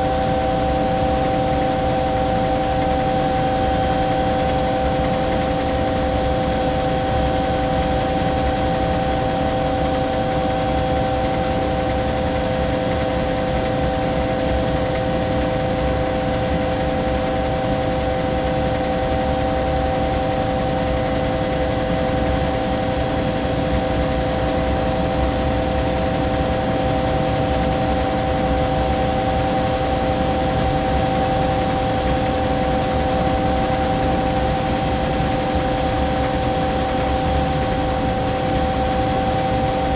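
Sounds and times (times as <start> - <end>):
helicopter engine and rotor drone: 0.0 - 39.9.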